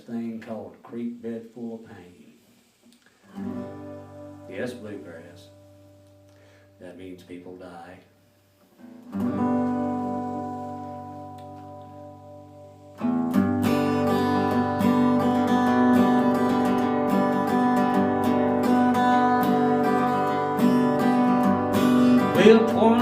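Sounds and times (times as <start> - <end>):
acoustic guitar strumming: 3.3 - 6.8, 8.8 - 23.0.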